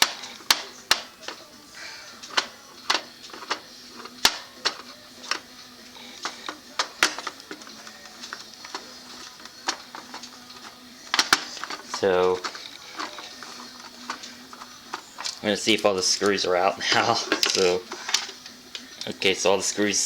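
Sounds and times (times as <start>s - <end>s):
screwdriver tapping plastic casing: 0.0s - 1.5s, 2.2s - 5.5s, 6.2s - 15.4s.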